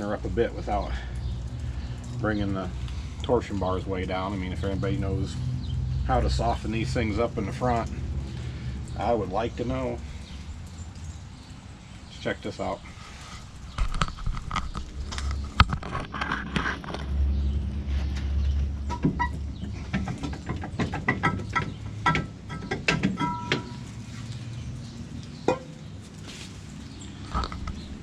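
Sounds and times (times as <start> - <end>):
metal parts clanking and scraping: 22.1 - 23.9
ringing metallic notes: 23.2 - 23.9.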